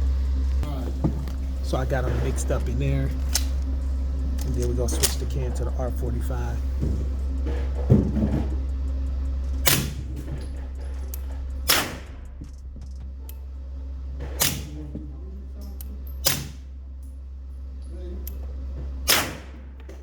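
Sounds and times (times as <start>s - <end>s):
suppressed gunshots: 11.6s - 12.2s, 19.1s - 19.7s.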